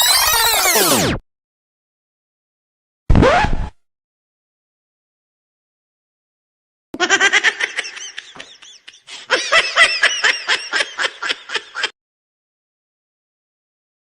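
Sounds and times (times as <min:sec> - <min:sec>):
high-pitched giggling laugh: 0:07.0 - 0:11.9.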